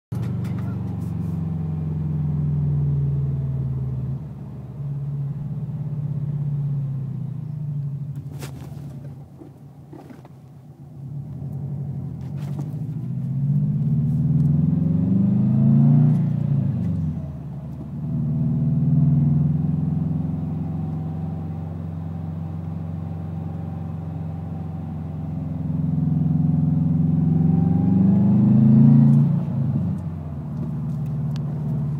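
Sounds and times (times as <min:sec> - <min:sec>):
car engine revving: 0:11.0 - 0:31.9.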